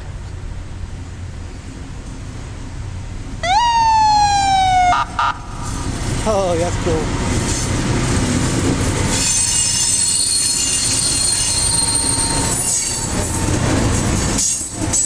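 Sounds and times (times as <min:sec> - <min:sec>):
high-pitched squealing tones: 0:03.4 - 0:06.3
train wheels rumbling on rail: 0:05.5 - 0:15.0.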